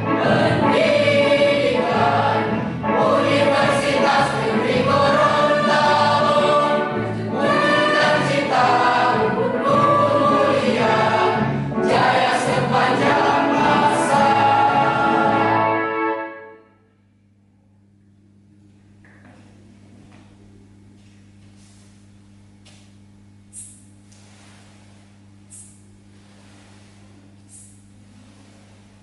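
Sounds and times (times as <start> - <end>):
mixed choir singing: 0.0 - 16.1.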